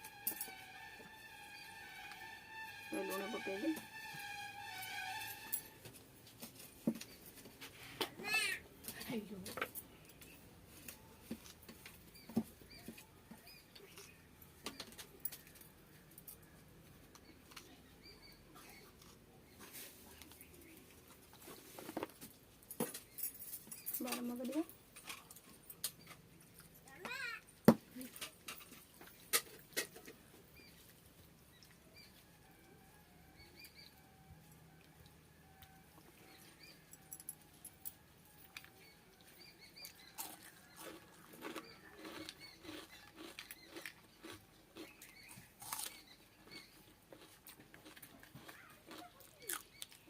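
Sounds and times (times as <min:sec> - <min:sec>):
chewing: 0:25.1 - 0:26.9, 0:38.4 - 0:50.0.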